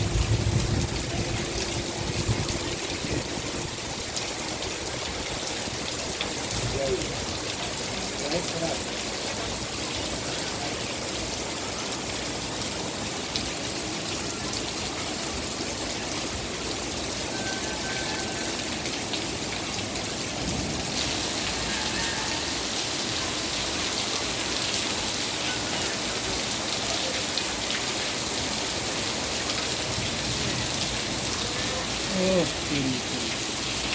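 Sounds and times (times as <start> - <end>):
steady rain falling: 0.0 - 33.9.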